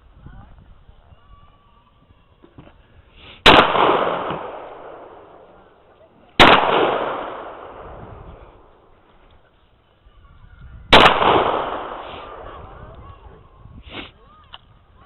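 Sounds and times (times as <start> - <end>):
rifle shots with echo: 3.4 - 5.8, 6.4 - 8.9, 10.9 - 12.7.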